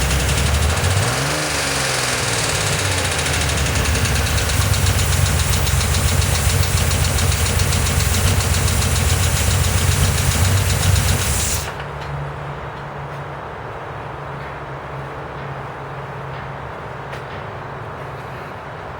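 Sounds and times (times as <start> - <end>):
car engine with fast tapping: 0.0 - 12.1.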